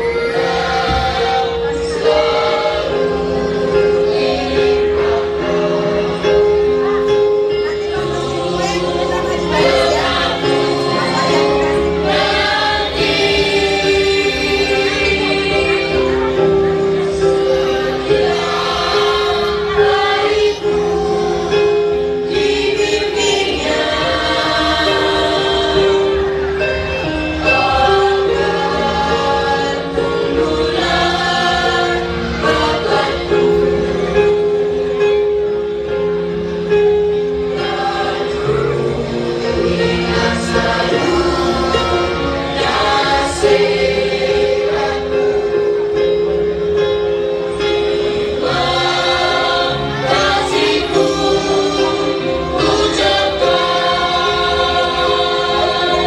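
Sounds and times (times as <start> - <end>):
group singing over music: 0.0 - 56.0
instrumental accompaniment: 0.0 - 56.0.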